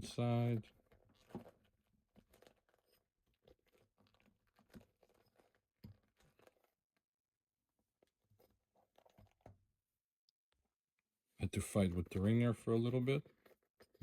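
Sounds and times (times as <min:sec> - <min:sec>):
rubber tire rustling and clicking: 0:00.7 - 0:07.0, 0:07.8 - 0:09.7.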